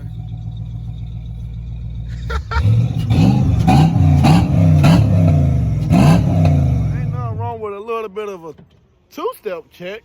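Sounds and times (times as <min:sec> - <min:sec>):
car engine revving with pops: 0:00.0 - 0:07.2.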